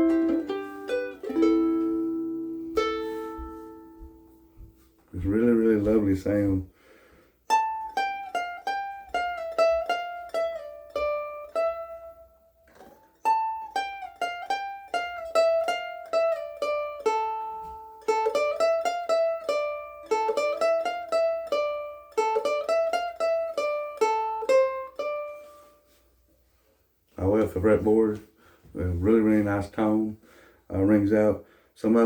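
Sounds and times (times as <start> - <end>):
ukulele single-note melody: 0.0 - 6.0, 7.5 - 26.0.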